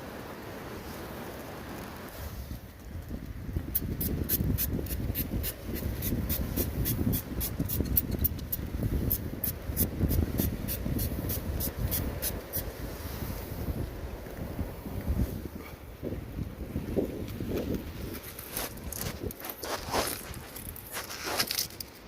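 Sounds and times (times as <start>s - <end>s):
wind buffeting microphone: 2.0s - 21.2s.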